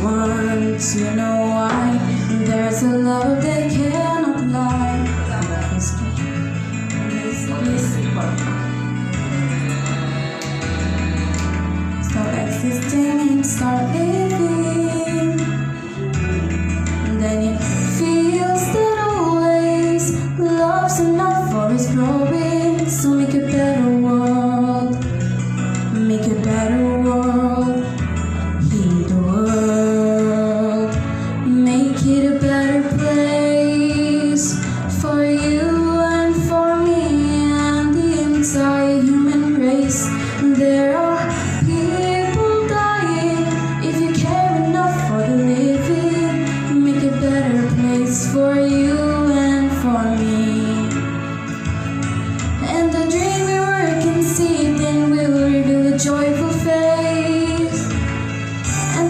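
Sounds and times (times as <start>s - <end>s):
recorded backing track: 0.0s - 59.0s.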